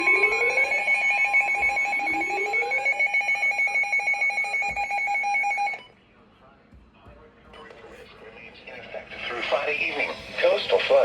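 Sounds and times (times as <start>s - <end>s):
steady high alarm tone: 0.0s - 5.9s.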